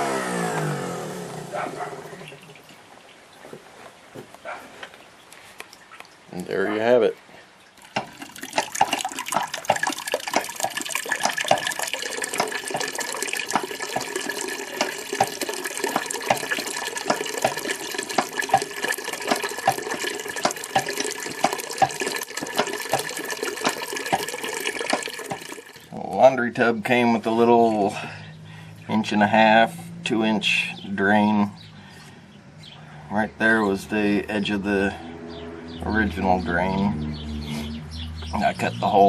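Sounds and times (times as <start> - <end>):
water splashing into sink: 7.8 - 25.9.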